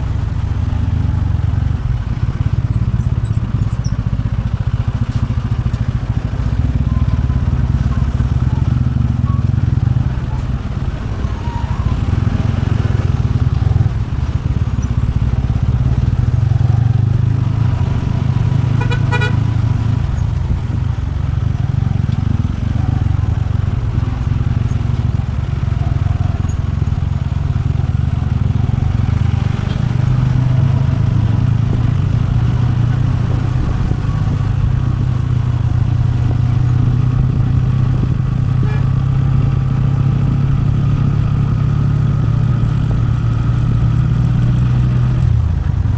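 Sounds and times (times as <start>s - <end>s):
motorcycle engine running: 0.0s - 45.9s
short horn toot: 18.8s - 19.5s, 38.6s - 38.9s.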